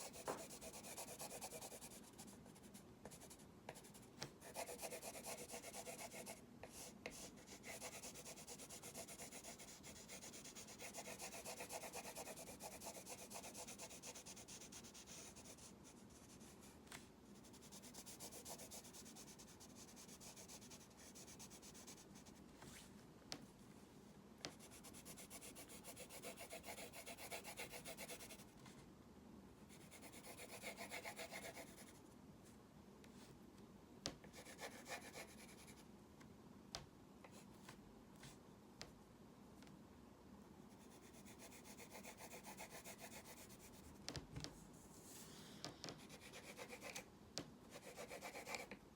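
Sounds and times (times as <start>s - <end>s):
pencil scratching on paper: 0.0s - 16.6s, 17.4s - 22.4s, 24.5s - 28.5s, 29.7s - 32.0s, 34.3s - 35.8s, 40.8s - 44.0s, 46.0s - 47.0s, 47.7s - 48.8s.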